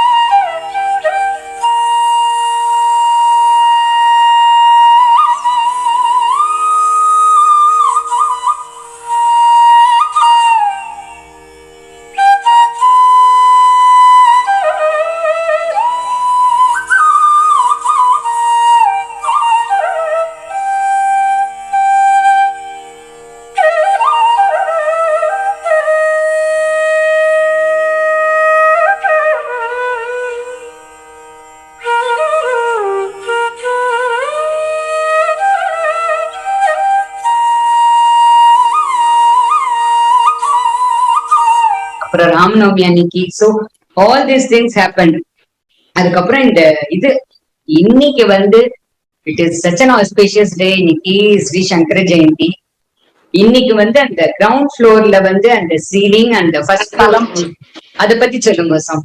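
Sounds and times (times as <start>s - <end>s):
flute melody: 0.0s - 42.3s, 56.8s - 58.2s.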